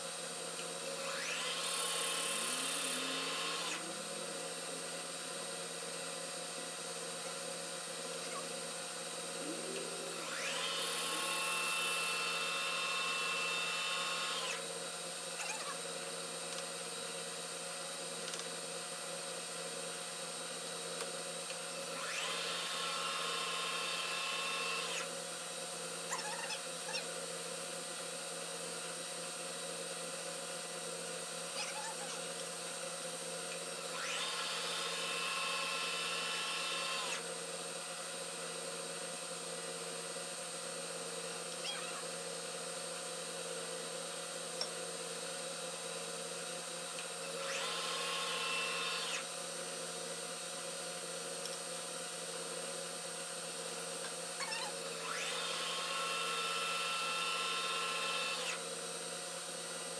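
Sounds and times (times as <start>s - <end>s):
metal lathe humming: 0.9s - 6.2s, 9.2s - 14.8s
high cutting noise: 9.3s - 14.5s.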